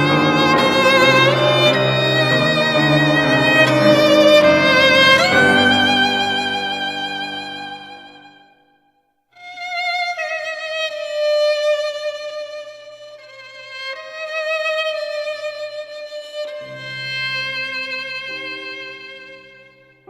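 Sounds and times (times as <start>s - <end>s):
held instrumental chord: 0.0s - 8.4s
slow solo melody with vibrato: 0.0s - 8.6s.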